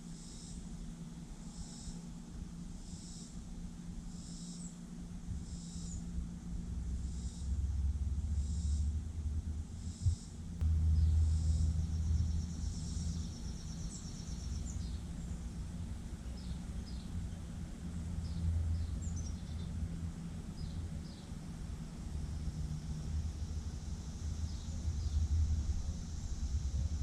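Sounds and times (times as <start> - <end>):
steady low rumble: 5.1 - 27.0
small birds chirping: 11.0 - 19.8, 20.5 - 21.4.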